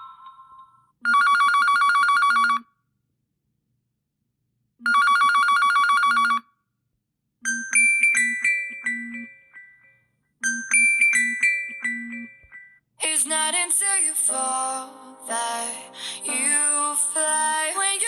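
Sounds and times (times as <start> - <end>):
phone ringtone trilling: 1.1 - 2.7, 4.9 - 6.5, 7.5 - 9.8, 10.4 - 12.6
chiming melody: 7.5 - 12.7.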